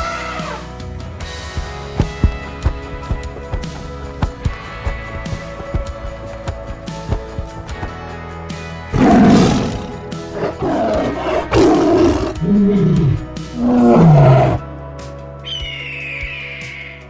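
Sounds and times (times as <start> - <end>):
background music: 0.0 - 17.0
big cat roaring: 8.9 - 14.6.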